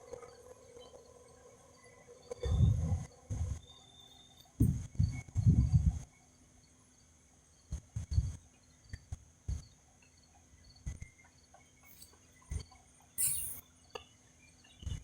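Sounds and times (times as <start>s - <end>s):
brief hiss: 13.2s - 13.6s
crickets trilling: 13.2s - 13.7s.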